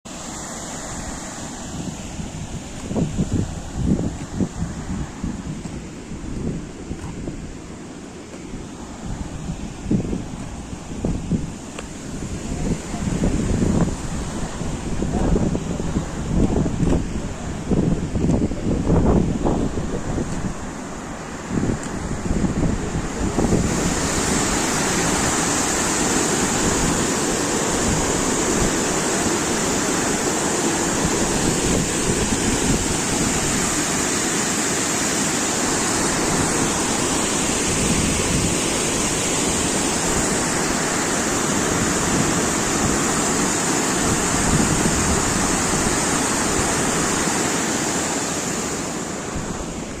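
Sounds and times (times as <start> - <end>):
fast-flowing water rushing: 0.1 - 50.0
high hiss: 20.9 - 50.0.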